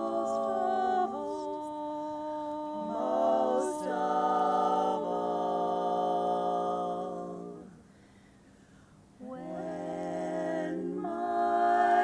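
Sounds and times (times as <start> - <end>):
women singing a cappella harmony: 0.0 - 8.0, 9.0 - 12.0.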